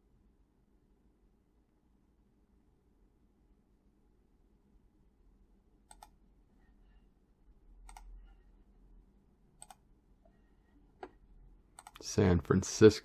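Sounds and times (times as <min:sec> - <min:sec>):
computer mouse double clicks: 0:11.8 - 0:12.0.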